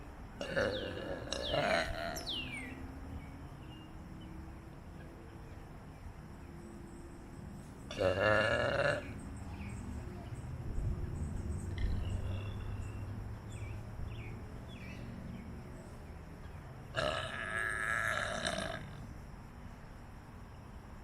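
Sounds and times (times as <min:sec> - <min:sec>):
person burping: 0:00.4 - 0:02.2, 0:07.9 - 0:09.1, 0:17.0 - 0:19.0.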